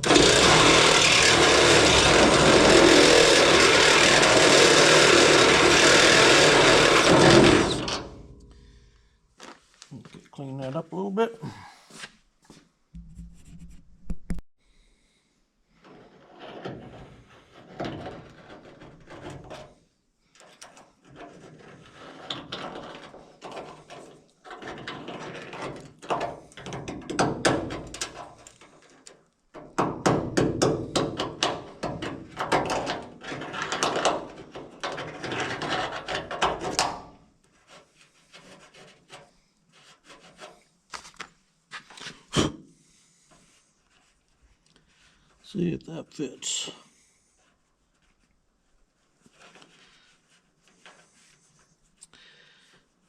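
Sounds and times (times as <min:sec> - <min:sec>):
tool rasping and scraping metal: 0:00.0 - 0:08.4, 0:20.5 - 0:26.8, 0:30.8 - 0:40.8.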